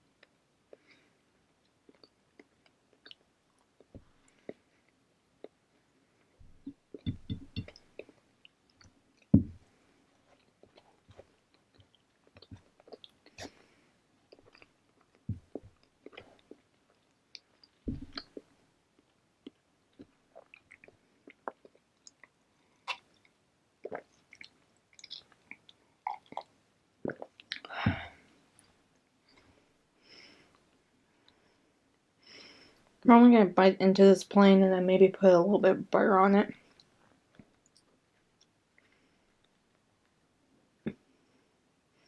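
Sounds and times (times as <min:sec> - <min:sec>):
person chewing bread: 0:01.6 - 0:27.6.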